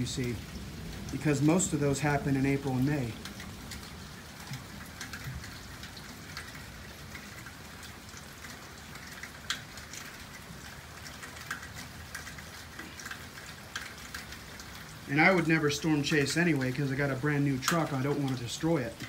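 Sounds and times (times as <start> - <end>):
steady rain falling: 0.0 - 19.0
drops ticking on a surface: 0.1 - 19.0.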